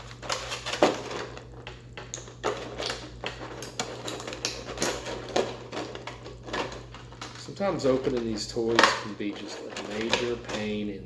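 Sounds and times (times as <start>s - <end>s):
plastic packaging crinkling: 0.0s - 11.0s
plastic snap: 8.7s - 9.2s.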